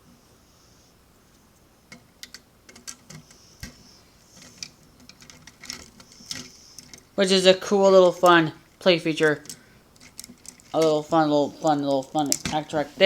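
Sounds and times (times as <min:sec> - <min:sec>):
plastic bricks clicking: 0:01.9 - 0:03.8, 0:04.4 - 0:07.1, 0:08.1 - 0:12.8.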